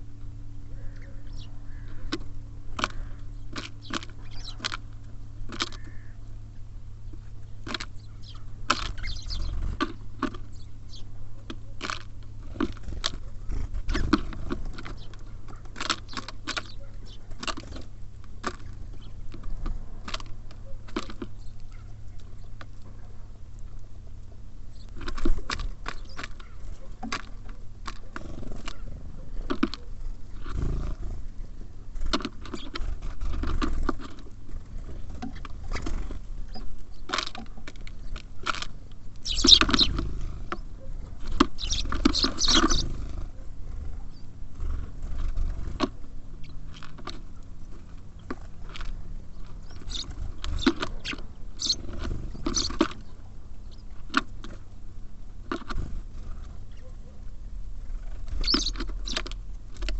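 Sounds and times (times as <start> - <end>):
birds pecking at feeder: 0.0 - 59.9
birds scrabbling: 0.0 - 59.9
steady low rumble: 30.0 - 59.9.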